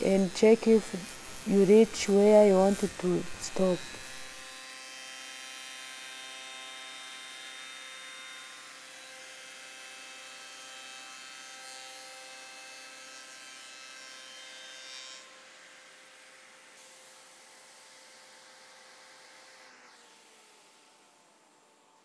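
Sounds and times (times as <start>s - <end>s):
electric motor humming: 0.0s - 5.3s.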